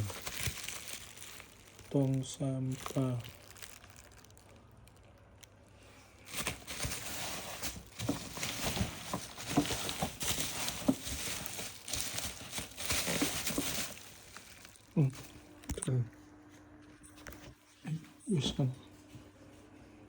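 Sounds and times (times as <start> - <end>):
plastic and cardboard crinkling: 0.0 - 15.8.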